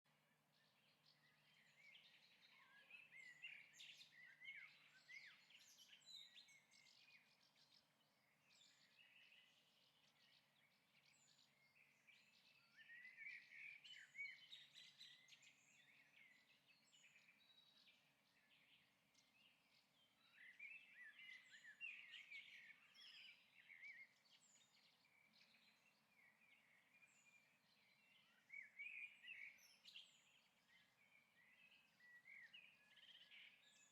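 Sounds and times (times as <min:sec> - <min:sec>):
faint birdsong: 0:00.0 - 0:33.9.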